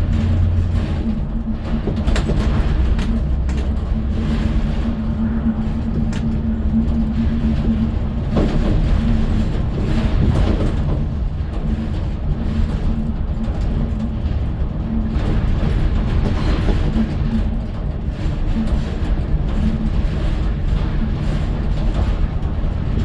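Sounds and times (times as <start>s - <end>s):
road noise: 0.0s - 17.1s
constant low hum: 0.0s - 23.0s
vehicle engine rumble: 0.0s - 23.0s.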